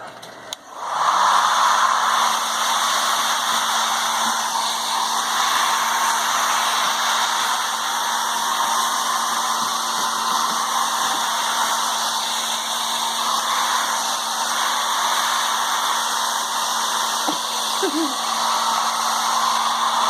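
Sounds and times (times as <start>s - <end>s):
hair dryer running: 0.4s - 20.0s.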